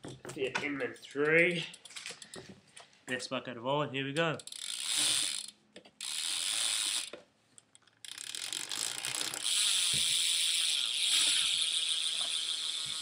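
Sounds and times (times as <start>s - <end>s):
bicycle freewheel hub ratcheting: 4.4s - 13.0s.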